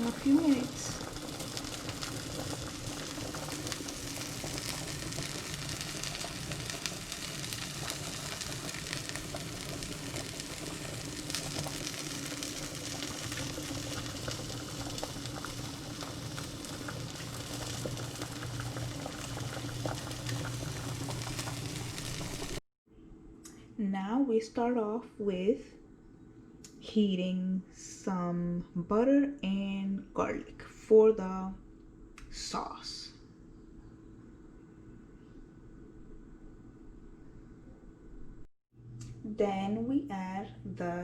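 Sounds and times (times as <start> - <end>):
chicken sizzling in a pan: 0.0 - 22.6.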